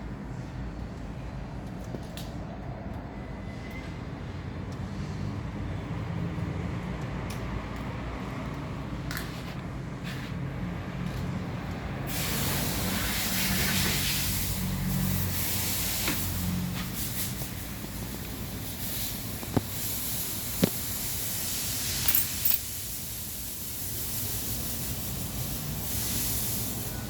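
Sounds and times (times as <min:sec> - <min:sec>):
loud spraying hiss: 0:12.1 - 0:27.0.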